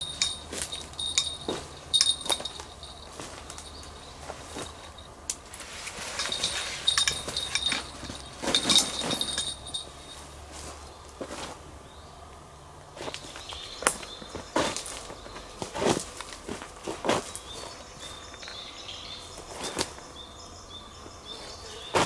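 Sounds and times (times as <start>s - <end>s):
high-pitched metallic clinks: 0.0s - 5.4s, 6.0s - 10.4s
rustling and crunching: 0.0s - 11.8s, 12.9s - 20.2s, 20.9s - 22.0s.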